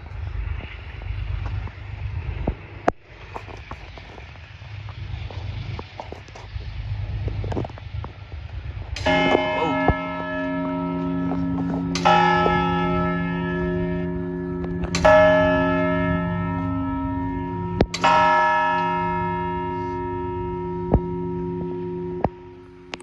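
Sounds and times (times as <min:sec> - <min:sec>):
low hum: 0:00.0 - 0:23.0
clock tower bell striking: 0:08.9 - 0:23.0.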